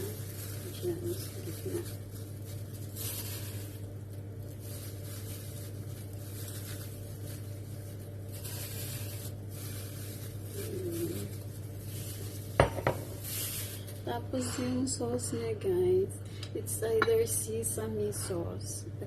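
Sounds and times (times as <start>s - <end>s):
faint rustling and handling: 0.0s - 14.7s
steady low hum: 0.0s - 19.0s.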